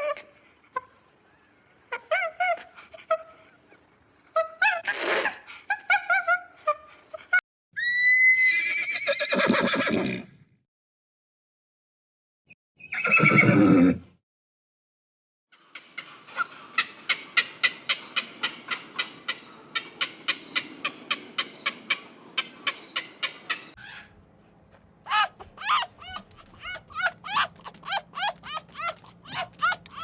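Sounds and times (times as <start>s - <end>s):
horse neighing: 7.8s - 10.3s, 12.9s - 14.1s
quick chirping calls: 16.0s - 23.9s.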